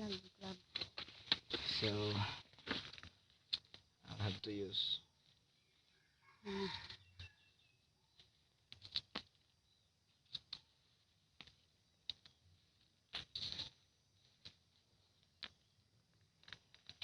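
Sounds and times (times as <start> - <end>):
scrapes of digging in soil: 0.0 - 3.8, 12.2 - 17.0.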